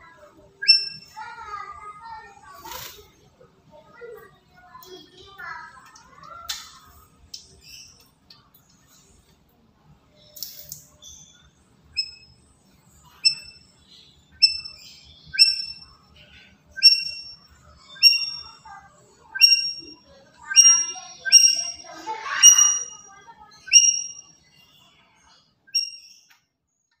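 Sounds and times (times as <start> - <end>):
parrot calling sharply: 0.6 - 1.0, 15.4 - 15.8, 16.8 - 17.4, 18.0 - 18.6, 19.4 - 23.0, 23.7 - 24.2.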